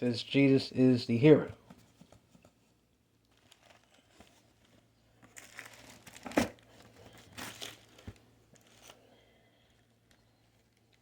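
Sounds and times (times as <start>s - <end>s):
packaging crinkling and rustling: 3.2s - 9.1s.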